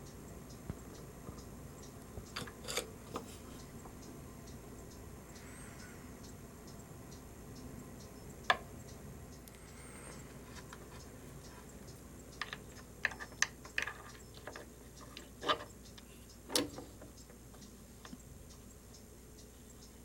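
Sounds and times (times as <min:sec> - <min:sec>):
light clicks and taps: 0:07.6 - 0:19.0.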